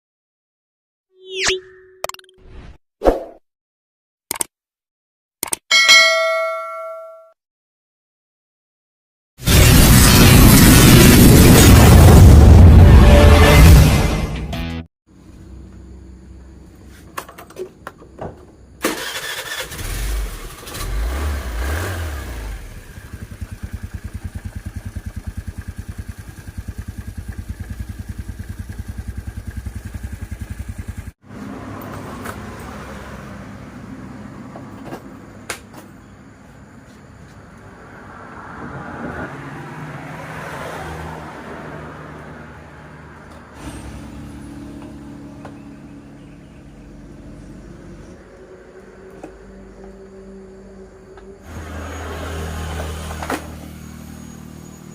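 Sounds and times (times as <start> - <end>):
scooter engine running and revving: 19.7 - 32.7, 51.4 - 54.9.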